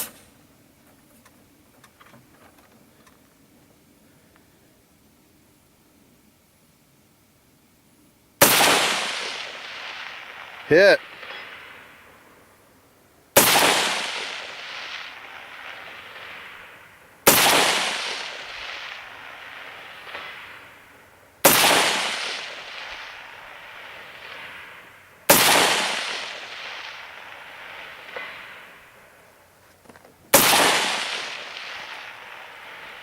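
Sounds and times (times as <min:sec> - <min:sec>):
rifle shots with rolling echo: 0:08.4 - 0:29.6, 0:30.3 - 0:33.0.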